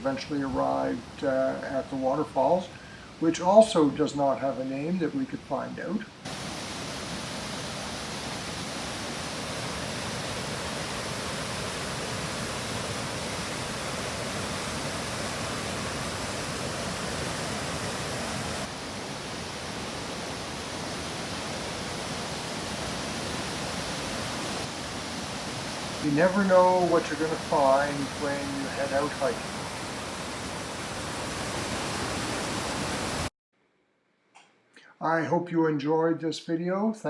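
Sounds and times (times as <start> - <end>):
waterfall rushing: 6.2 - 33.3.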